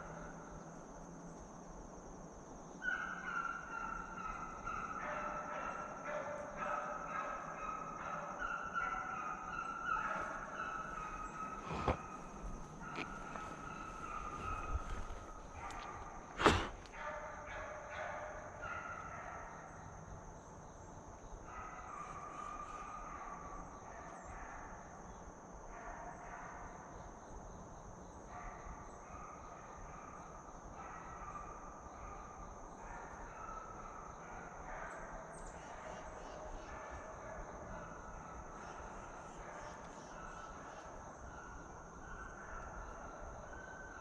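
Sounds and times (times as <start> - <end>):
gunshot: 16.4 - 16.8.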